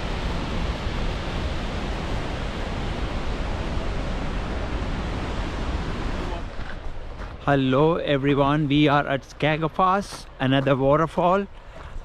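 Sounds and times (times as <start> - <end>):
waterfall roaring: 0.0 - 7.1
wind on microphone: 0.0 - 7.2.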